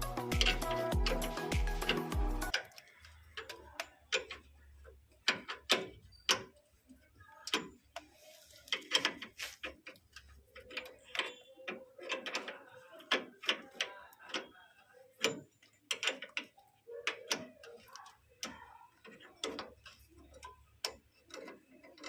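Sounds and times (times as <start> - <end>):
sharp clicks and taps: 0.0 - 4.5.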